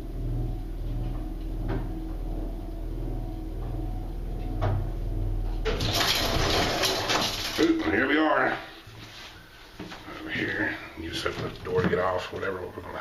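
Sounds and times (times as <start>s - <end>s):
elevator drive low hum: 0.0s - 13.0s
elevator car clattering rattle: 4.3s - 8.1s.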